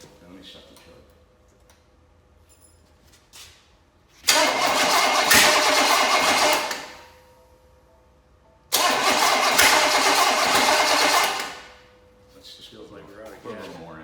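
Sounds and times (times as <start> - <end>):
car engine cranking and running: 4.2 - 7.1, 8.7 - 11.8.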